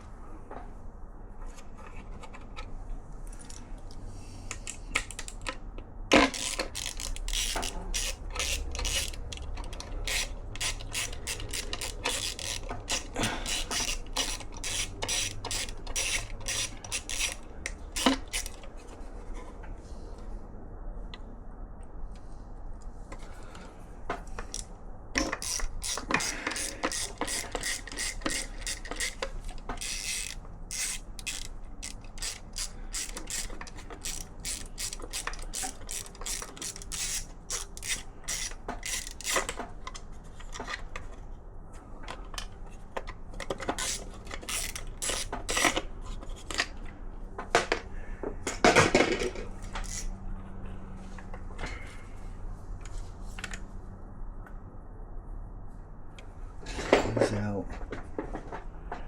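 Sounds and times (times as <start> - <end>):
ratchet wrench clicking: 6.1 - 18.6, 24.4 - 39.6, 43.7 - 45.8, 49.7 - 50.1.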